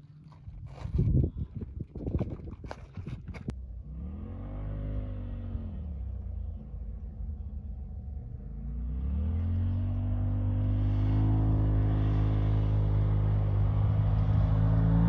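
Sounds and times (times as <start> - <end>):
off-road vehicle engine revving: 3.4 - 15.0.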